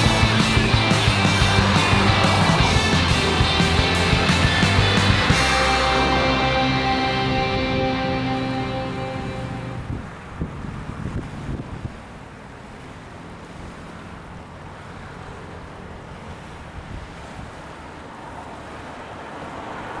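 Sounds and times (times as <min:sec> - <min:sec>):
rush of wind: 0:00.0 - 0:12.2
wind buffeting microphone: 0:08.7 - 0:12.1
choppy lake water: 0:09.8 - 0:20.0.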